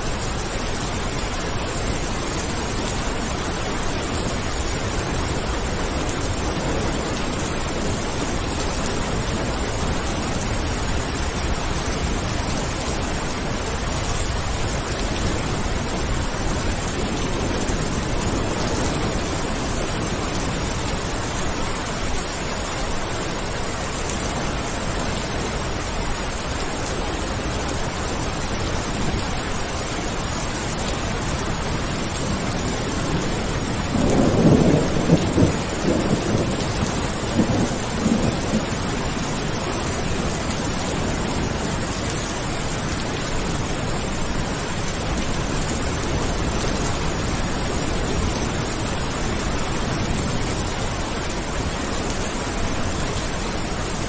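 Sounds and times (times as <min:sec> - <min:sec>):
thunder rumble: 0:00.0 - 0:25.5, 0:27.1 - 0:53.7
steady rain: 0:00.0 - 0:54.0.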